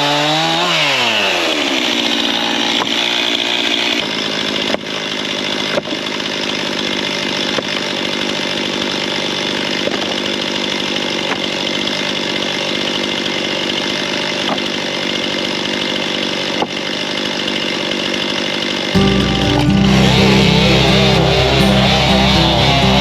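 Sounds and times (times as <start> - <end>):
chainsaw cutting wood: 0.0 - 23.0.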